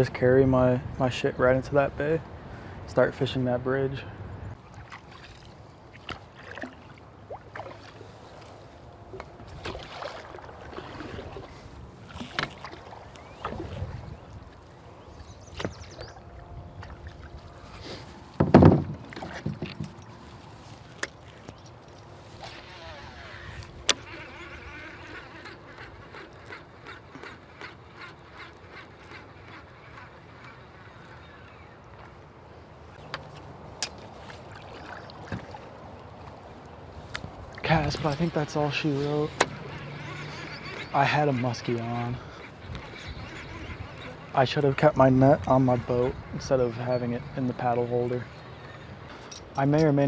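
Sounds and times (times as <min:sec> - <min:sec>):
paddle splashing in water: 0:04.6 - 0:14.7, 0:16.8 - 0:20.6, 0:33.2 - 0:38.3
paddle knocking against hull: 0:18.3 - 0:20.0.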